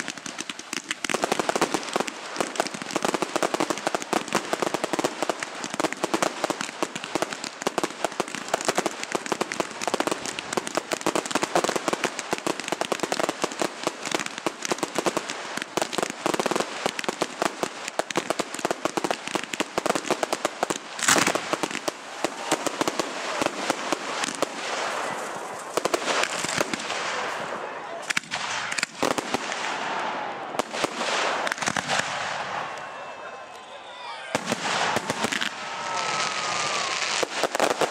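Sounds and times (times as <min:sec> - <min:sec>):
fireworks crackling: 0:00.0 - 0:37.9.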